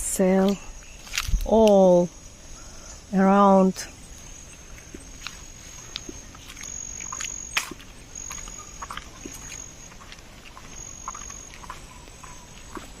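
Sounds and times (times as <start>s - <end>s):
high steady animal trill: 3.4s - 13.0s.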